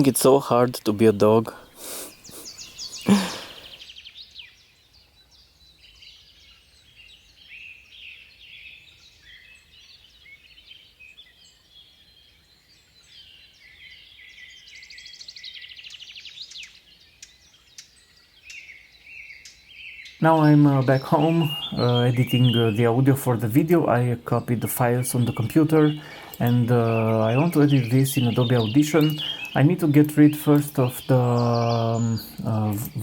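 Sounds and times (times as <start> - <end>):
bird trill: 0.0 - 33.0
songbirds singing: 0.0 - 33.0.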